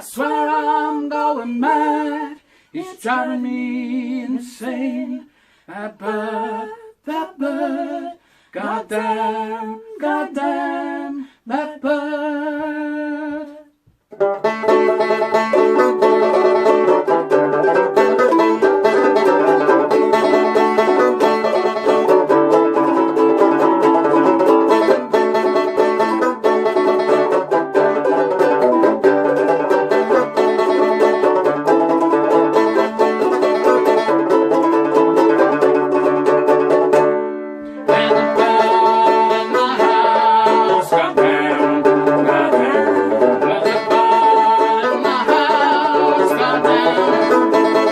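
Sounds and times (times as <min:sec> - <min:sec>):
fast picking on plucked strings: 0:14.1 - 0:47.9.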